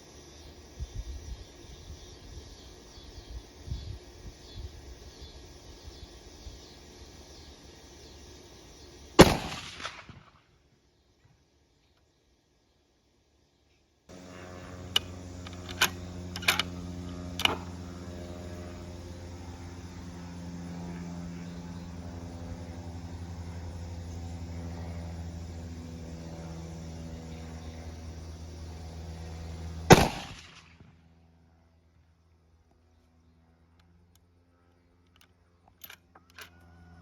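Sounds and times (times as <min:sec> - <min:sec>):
rifle shot: 0:09.2 - 0:10.4, 0:29.9 - 0:30.8
low steady hum: 0:11.5 - 0:37.0
small sharp clicks: 0:14.9 - 0:16.7, 0:35.0 - 0:36.6.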